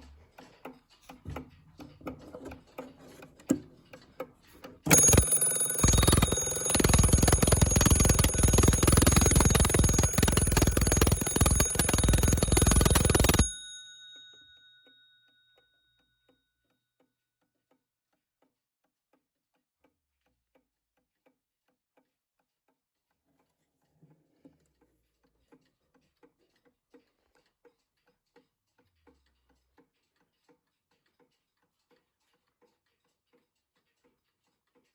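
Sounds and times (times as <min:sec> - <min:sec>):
clock ticking: 0:04.9 - 0:13.6
alarm clock bell ringing: 0:04.9 - 0:15.1.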